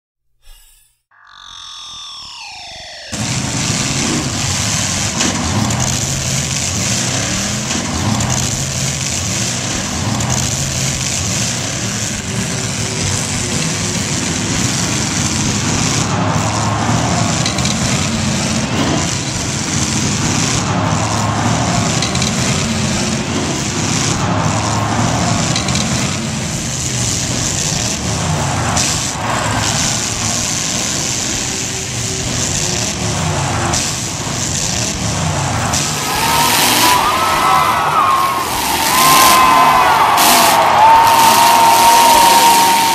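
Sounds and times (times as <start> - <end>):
car engines revving: 2.3 - 42.9
cars colliding crunch: 3.2 - 13.3.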